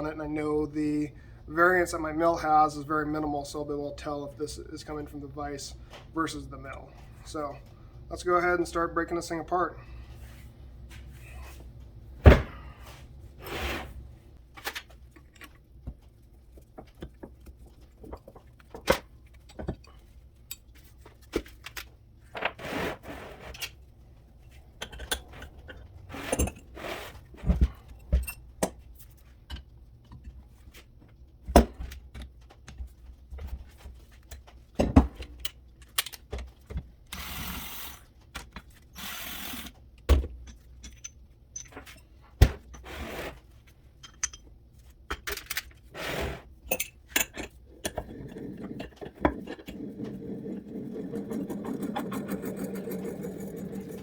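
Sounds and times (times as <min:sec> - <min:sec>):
tools and metal parts clanking: 0:24.4 - 0:26.8, 0:40.2 - 0:42.9, 0:43.9 - 0:45.9, 0:46.7 - 0:54.0
rasping noise: 0:49.6 - 0:54.0.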